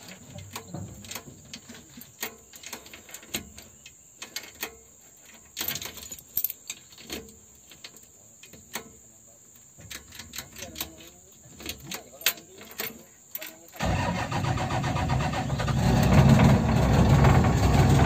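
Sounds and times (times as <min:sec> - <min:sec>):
irregular clicks and knocks: 0:00.0 - 0:13.8.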